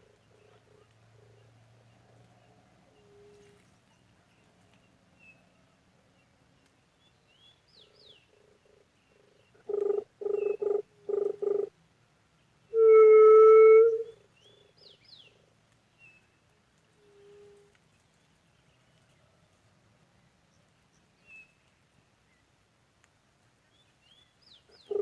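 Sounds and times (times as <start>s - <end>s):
dove-like coos: 9.6s - 11.7s, 12.8s - 14.2s, 24.8s - 25.0s
low hoots of a bird call whistle: 12.7s - 14.2s.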